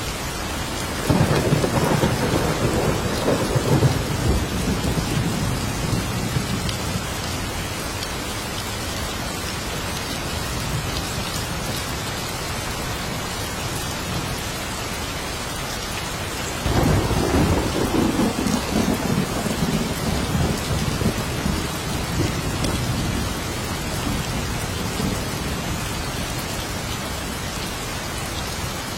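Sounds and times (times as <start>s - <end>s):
steady rain hissing: 0.0s - 28.9s
thunder rumbling: 1.0s - 7.1s, 16.6s - 26.0s.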